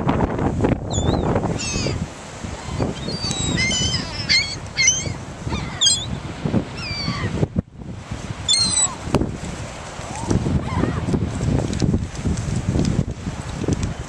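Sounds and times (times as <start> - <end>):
wind rumbling on microphone: 0.0 - 14.0
seagulls calling: 0.9 - 6.2, 6.8 - 7.4, 8.5 - 9.0.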